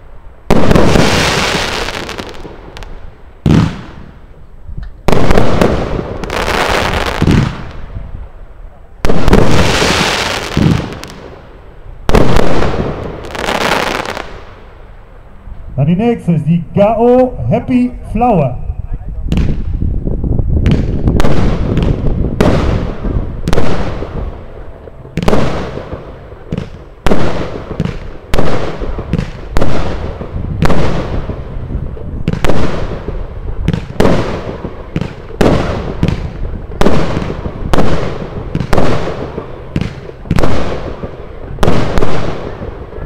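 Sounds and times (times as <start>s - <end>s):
fireworks battery bangs: 0.5s - 4.1s, 5.0s - 7.8s.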